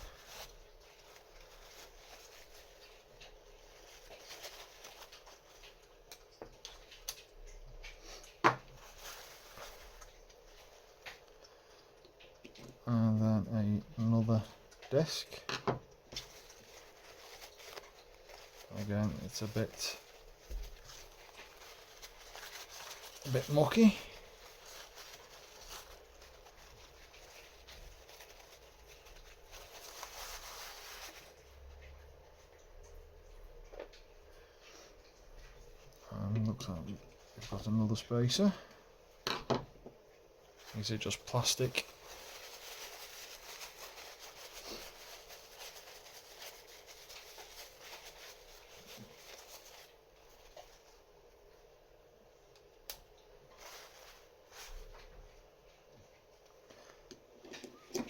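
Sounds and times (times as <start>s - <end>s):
paper towel rubbing: 0.0s - 5.6s, 16.1s - 31.4s, 40.6s - 51.0s
faint rustling: 0.0s - 5.8s, 7.9s - 12.0s, 16.1s - 32.5s, 40.6s - 51.1s, 53.5s - 58.0s.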